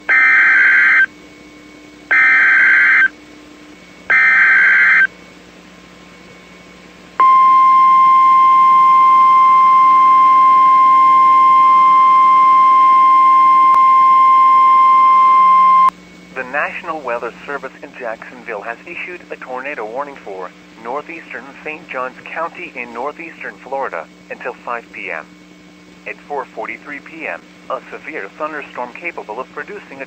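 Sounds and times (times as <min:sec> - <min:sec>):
steady high warning tone: 0:00.0 - 0:01.2, 0:02.1 - 0:03.2, 0:04.1 - 0:05.2, 0:07.2 - 0:25.4
screeching digital alert bursts: 0:00.1 - 0:01.1, 0:02.1 - 0:03.1, 0:04.1 - 0:05.1.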